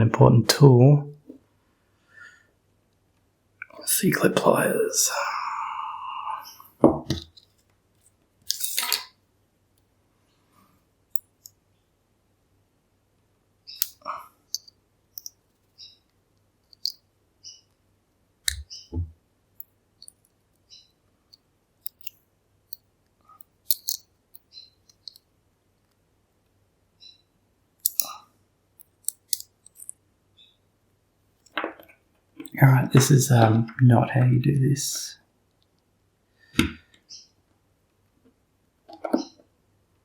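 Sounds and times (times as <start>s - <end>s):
metal tools clicking on a lock: 8.5s - 9.1s, 13.7s - 15.4s, 21.8s - 22.8s, 23.7s - 25.2s, 27.8s - 28.2s, 28.8s - 30.0s.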